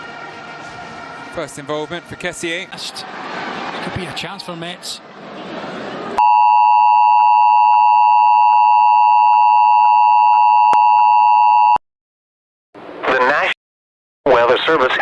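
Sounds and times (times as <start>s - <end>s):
two-tone alarm: 6.2s - 11.8s.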